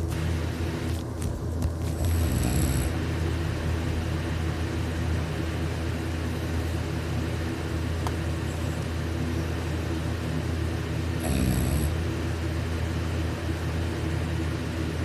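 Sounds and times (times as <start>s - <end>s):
man snoring heavily: 1.9s - 3.0s, 11.2s - 12.0s.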